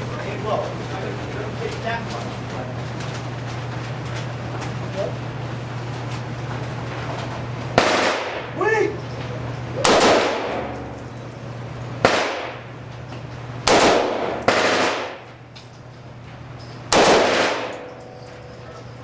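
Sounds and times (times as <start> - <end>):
automatic rifle bursts: 13.7 - 15.2, 16.9 - 17.9.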